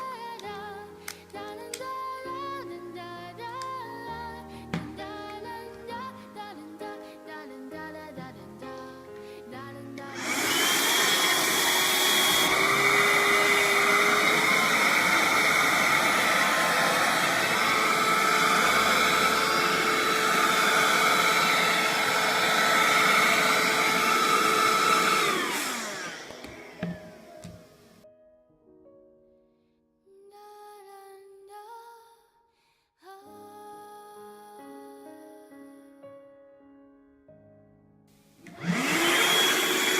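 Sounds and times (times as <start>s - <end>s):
soft background music: 0.0s - 10.2s
vacuum cleaner running: 10.1s - 28.0s, 38.4s - 39.9s.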